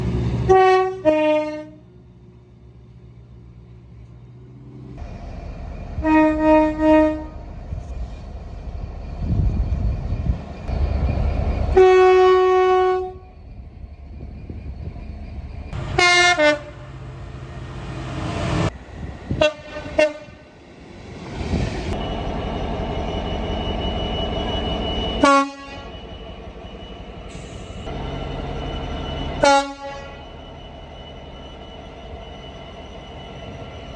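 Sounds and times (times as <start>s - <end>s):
train rumbling on track: 0.0s - 33.9s
train horn blasts: 0.4s - 1.8s, 6.0s - 7.5s, 11.7s - 13.4s, 15.8s - 16.9s, 19.3s - 20.4s, 25.2s - 26.0s, 29.4s - 30.2s.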